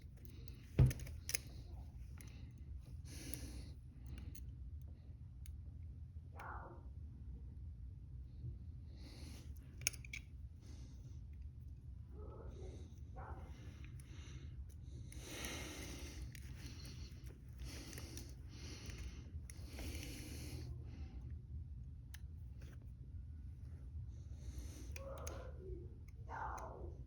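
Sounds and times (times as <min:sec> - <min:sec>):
low steady rumble: 0:00.0 - 0:27.0
metallic handcuff clicks: 0:00.1 - 0:02.3, 0:09.8 - 0:10.3
handcuffs dull knock: 0:00.6 - 0:01.5
person breathing hard: 0:12.6 - 0:21.3.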